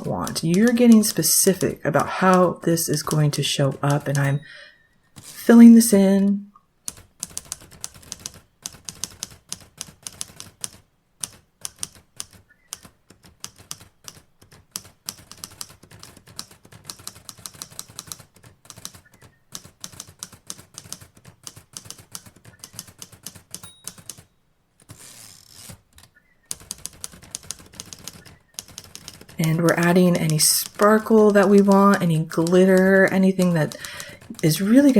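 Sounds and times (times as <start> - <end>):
typewriter keys clacking: 0.0 - 4.4, 6.9 - 34.9
typewriter carriage rasp: 6.9 - 34.9
typewriter bell ding: 23.6 - 24.3.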